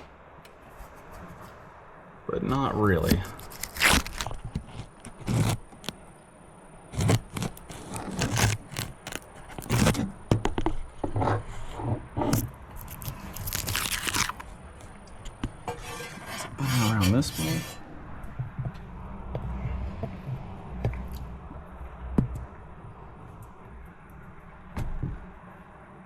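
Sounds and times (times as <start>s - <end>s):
hard objects scraping and knocking: 3.0s - 6.0s, 6.9s - 14.4s, 15.3s - 17.8s.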